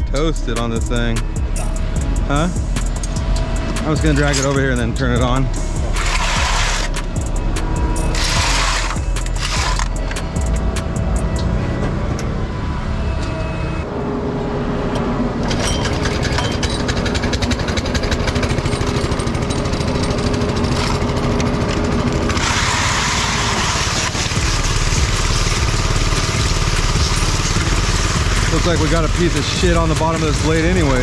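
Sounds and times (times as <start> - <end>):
power trowel petrol engine running: 5.8 - 10.3, 15.4 - 31.0.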